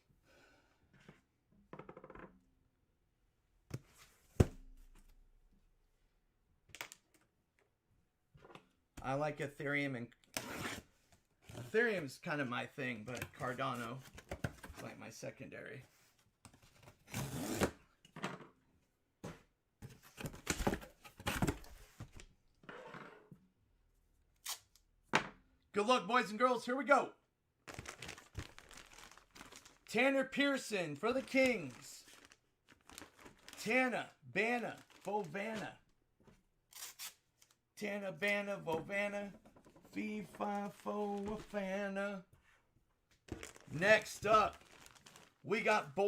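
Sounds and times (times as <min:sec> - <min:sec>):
packaging handling on table: 0:27.7 - 0:29.9, 0:31.0 - 0:33.8, 0:34.7 - 0:35.6, 0:43.3 - 0:45.4.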